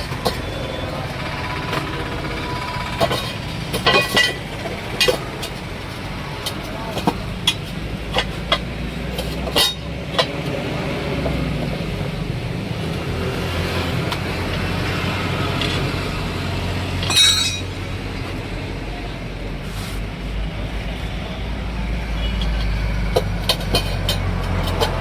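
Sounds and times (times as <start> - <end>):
metal clinks and knocks: 0.0 - 10.4, 17.0 - 18.0, 22.2 - 25.0.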